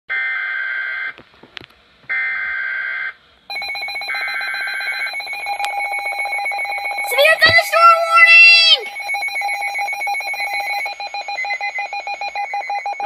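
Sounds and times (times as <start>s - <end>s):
rapidly pulsing alarm tone: 2.6s - 13.0s
shrill data tone bursts: 3.5s - 10.9s.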